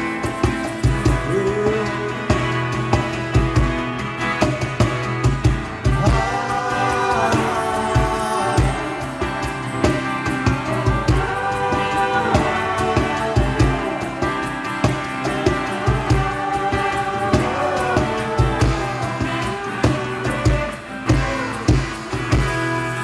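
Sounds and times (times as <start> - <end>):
drum kit beat: 0.0 - 23.0
bending melodic lead line: 5.7 - 14.8.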